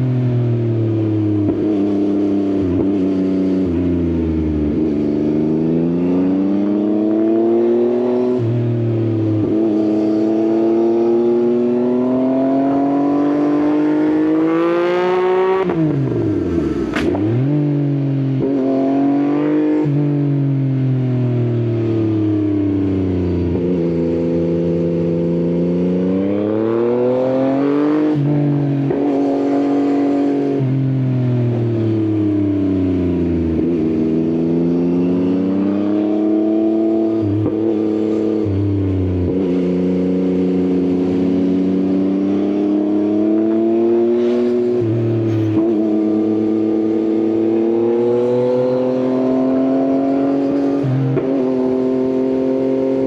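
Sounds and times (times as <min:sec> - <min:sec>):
motorcycle engine revving: 0:00.7 - 0:20.6, 0:21.3 - 0:53.0
brief sweeping sound: 0:15.7 - 0:17.5.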